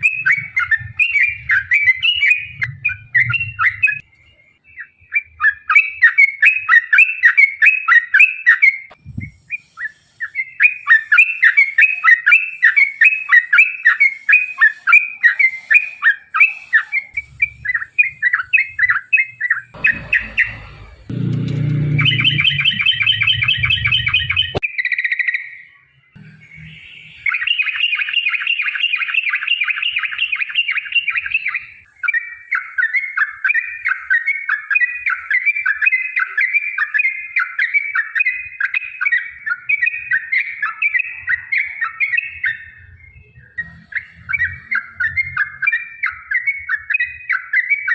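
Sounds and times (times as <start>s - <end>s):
bird chattering song: 0.0s - 47.9s
low rumble: 19.8s - 24.6s.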